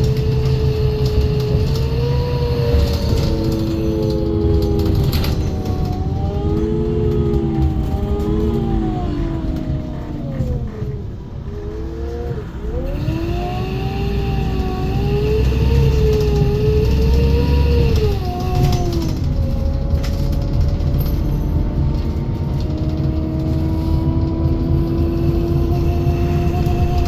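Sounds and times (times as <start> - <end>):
bus engine rumble: 0.0 - 27.0.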